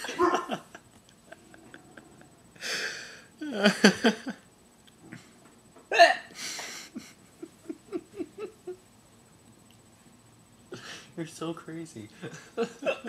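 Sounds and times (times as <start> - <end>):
loud breath: 2.6 - 3.4, 6.3 - 7.0, 10.7 - 11.2
woman hiccuping: 5.9 - 6.3.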